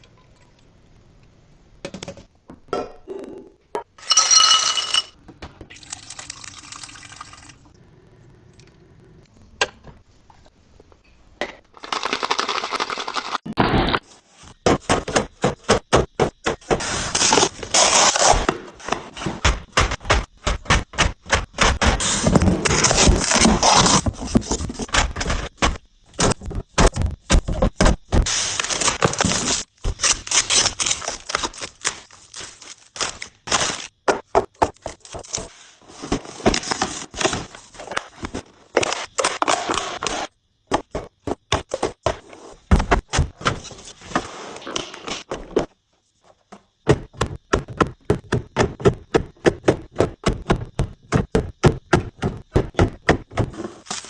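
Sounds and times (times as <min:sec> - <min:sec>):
kitchen items knocking and clacking: 0:03.8 - 0:05.6.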